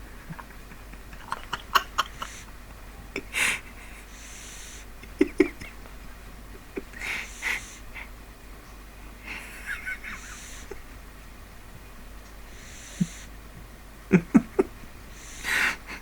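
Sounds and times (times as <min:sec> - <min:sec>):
dog snoring: 0:12.5 - 0:13.3.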